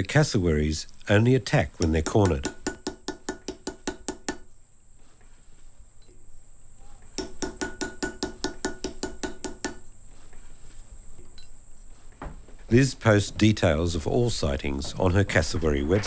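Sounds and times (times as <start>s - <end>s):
insect clicking pulses: 0.0s - 4.4s
insect high-pitched buzz: 0.0s - 15.9s.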